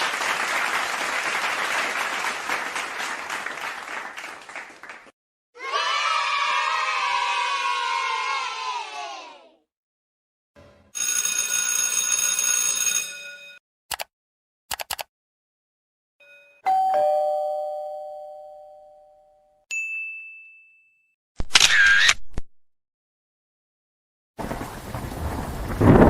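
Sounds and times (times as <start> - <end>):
short clicks: 13.9 - 14.1, 14.7 - 15.1
short high ding: 16.2 - 21.1
ding-dong doorbell chime: 16.2 - 21.2.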